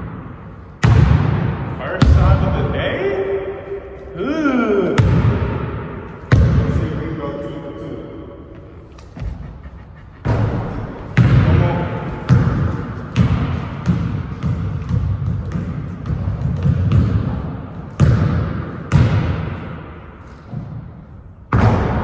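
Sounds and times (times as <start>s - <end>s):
basketball bouncing on gym floor: 0.0s - 2.5s, 5.0s - 6.8s, 8.5s - 20.9s.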